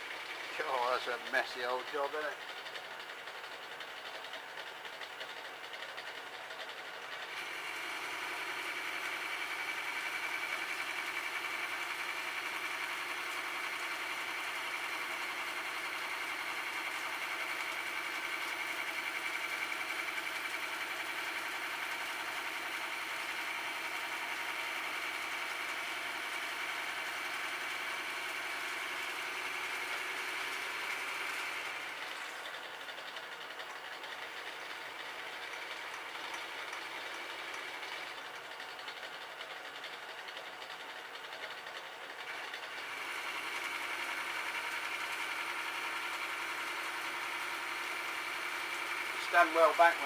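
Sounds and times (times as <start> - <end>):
metal lathe running: 0.0 - 50.0
lathe cutting whine: 7.2 - 32.9, 42.2 - 50.0.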